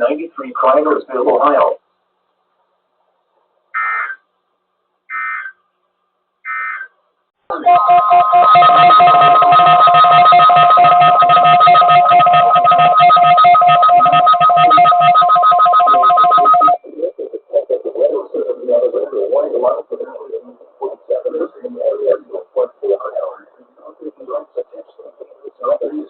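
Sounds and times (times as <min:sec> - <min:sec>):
data bursts: 0:07.5 - 0:19.3
steady warning alarm tone: 0:07.7 - 0:16.9.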